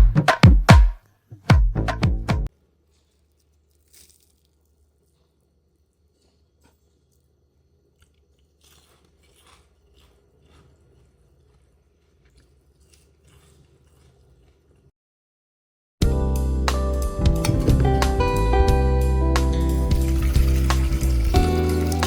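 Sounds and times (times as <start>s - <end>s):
crunchy chewing: 2.8s - 14.9s.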